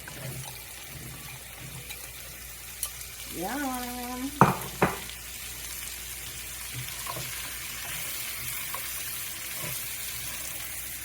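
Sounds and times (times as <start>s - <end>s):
food sizzling in a pan: 0.0s - 11.0s
utensil tapping a pan: 4.4s - 5.1s.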